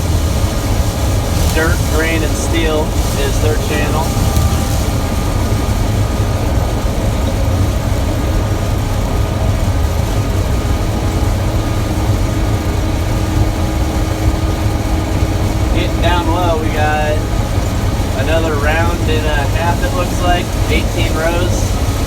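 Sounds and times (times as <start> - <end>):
combine engine drone: 0.0 - 22.0
faint steady tone: 1.2 - 6.5.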